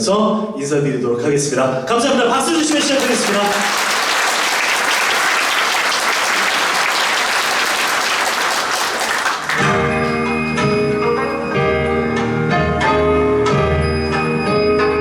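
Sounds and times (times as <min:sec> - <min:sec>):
audience applauding: 0:02.3 - 0:10.5
instrumental music with bell-like tones: 0:09.6 - 0:15.0.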